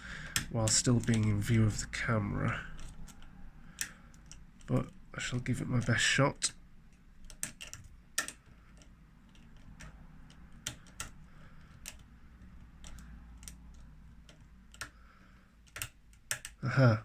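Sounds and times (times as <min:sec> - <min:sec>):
lock pick clicking in padlock: 0:06.9 - 0:15.0.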